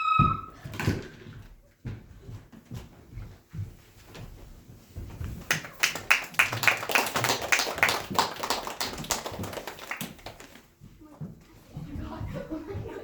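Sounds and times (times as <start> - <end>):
audience clapping: 5.4 - 10.7.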